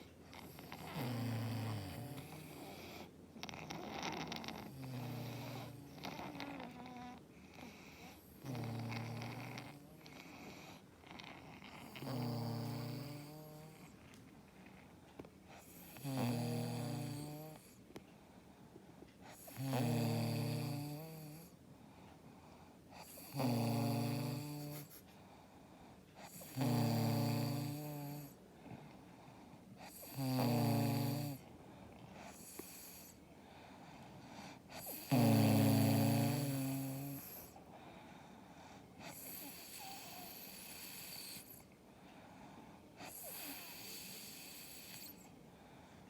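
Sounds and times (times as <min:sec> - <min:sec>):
person snoring: 0:00.0 - 0:13.9, 0:15.6 - 0:17.8, 0:19.3 - 0:21.5, 0:23.0 - 0:25.0, 0:26.2 - 0:28.4, 0:29.8 - 0:31.5, 0:34.7 - 0:37.6, 0:39.0 - 0:41.6, 0:43.0 - 0:45.3
quiet breathing: 0:00.0 - 0:46.0.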